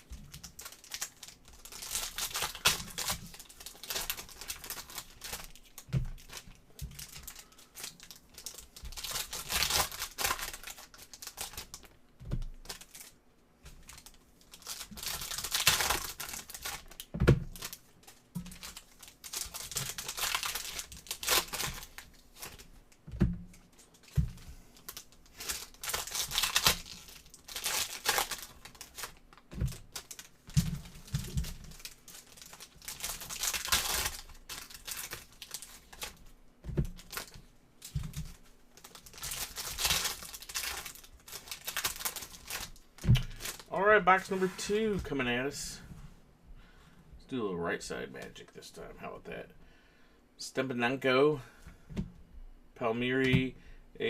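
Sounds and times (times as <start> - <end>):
wrappers crinkling and tearing: 0.0 - 22.7, 23.5 - 45.2.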